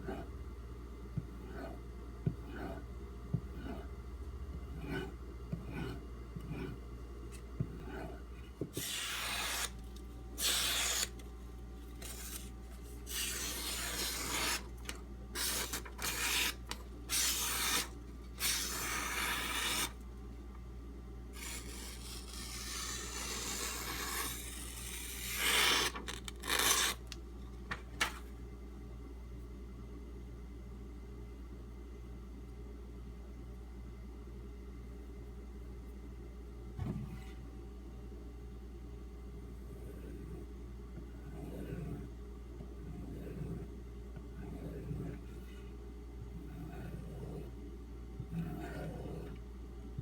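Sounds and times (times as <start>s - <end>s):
knife rasping on whetstone: 4.7s - 6.8s, 7.7s - 9.8s, 10.4s - 11.2s, 13.1s - 14.7s, 15.4s - 19.9s, 48.3s - 49.4s.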